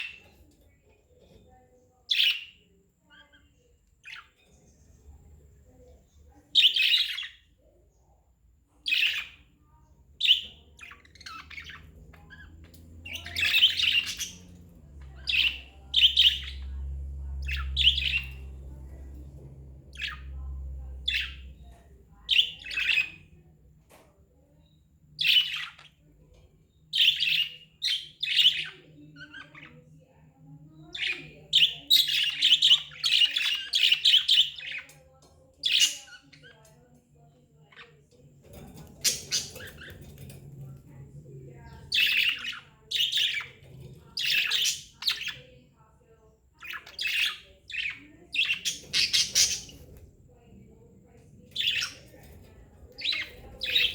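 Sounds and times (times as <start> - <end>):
budgerigars chirping and warbling: 0.0 - 7.8, 8.8 - 29.9, 30.7 - 36.7, 37.6 - 53.9.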